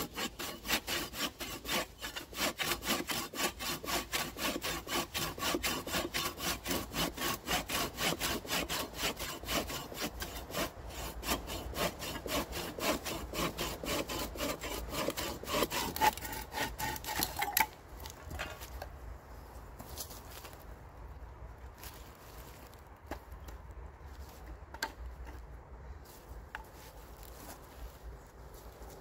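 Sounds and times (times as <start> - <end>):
hand saw cutting wood: 0.0 - 17.7.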